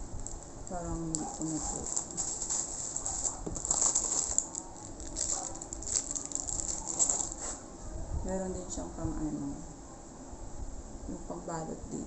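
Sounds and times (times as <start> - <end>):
packaging rustling and crinkling: 1.1 - 7.6.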